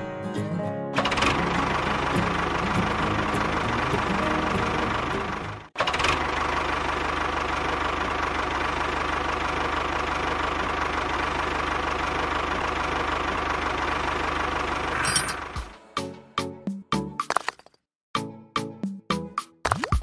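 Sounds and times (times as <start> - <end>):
tractor engine idling: 1.0 - 15.8.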